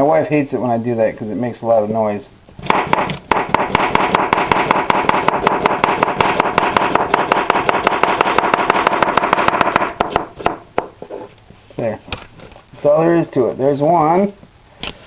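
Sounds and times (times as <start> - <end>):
knife chopping on cutting board: 2.7 - 10.6.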